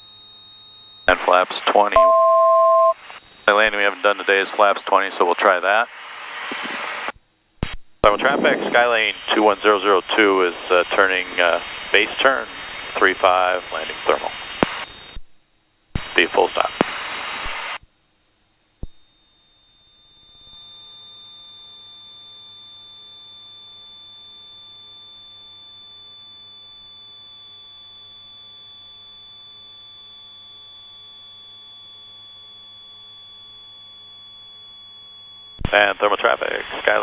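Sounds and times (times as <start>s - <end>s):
electrical hum with high whine: 0.0s - 37.0s.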